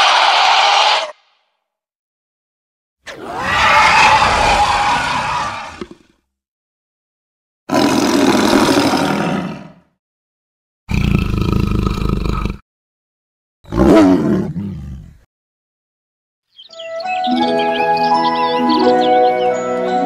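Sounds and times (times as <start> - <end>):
creature roars: 3.1 - 6.1, 7.7 - 9.9, 10.9 - 12.6, 13.7 - 15.3.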